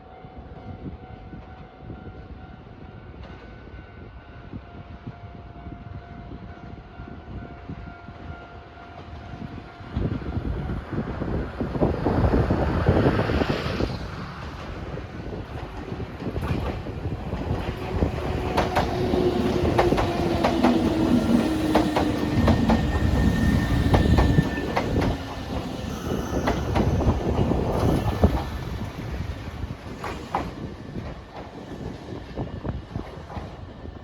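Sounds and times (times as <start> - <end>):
electric train whine: 0.1 - 34.0
train wheels clicking over rail joints: 14.2 - 33.7.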